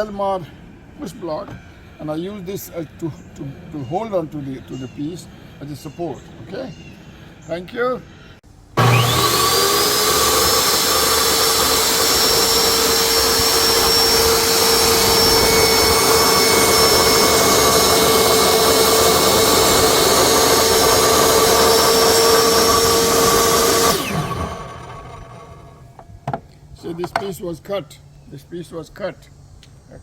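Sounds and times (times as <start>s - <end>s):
saw cutting wood: 8.8s - 25.9s
table saw whine: 8.8s - 26.0s.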